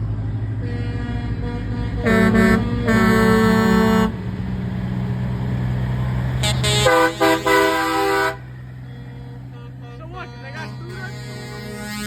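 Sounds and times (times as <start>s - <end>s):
low engine rumble: 0.0s - 12.0s
truck air horn blasts: 0.6s - 4.6s, 6.4s - 12.0s.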